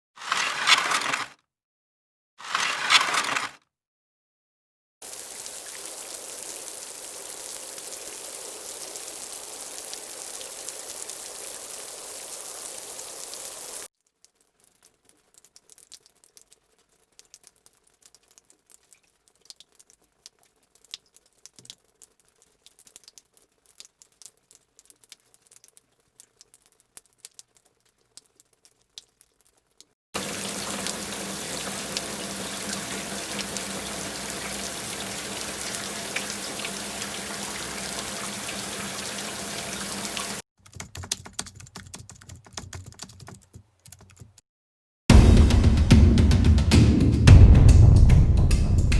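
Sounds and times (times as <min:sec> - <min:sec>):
scattered rain drops: 0:00.2 - 0:01.3, 0:02.5 - 0:03.5, 0:05.0 - 0:40.4, 0:41.0 - 0:44.4
steady falling rain: 0:05.0 - 0:29.6, 0:30.2 - 0:40.4.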